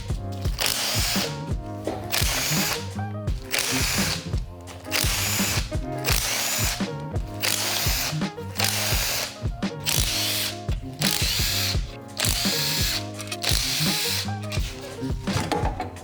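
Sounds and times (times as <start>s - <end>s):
background music: 0.0s - 16.0s
cordless power tool spinning bolts: 0.0s - 16.0s.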